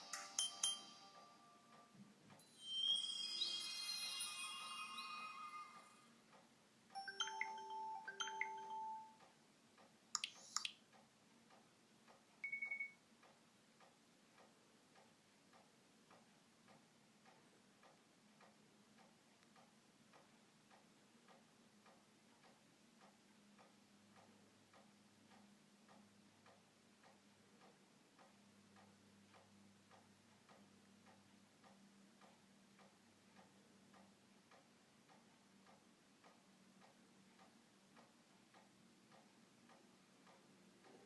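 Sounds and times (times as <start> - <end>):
faint clock ticking: 0.0 - 2.5, 5.7 - 41.0
phone electronic beeps: 12.4 - 13.0.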